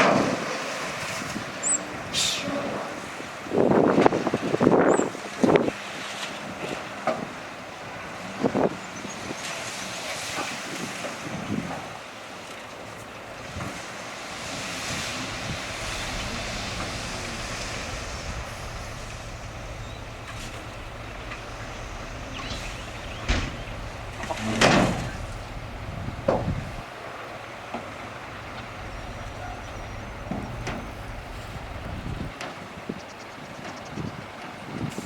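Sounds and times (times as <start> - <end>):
diesel earthmoving machines droning: 12.7 - 32.4
sharp knocks and bangs: 15.3 - 26.8.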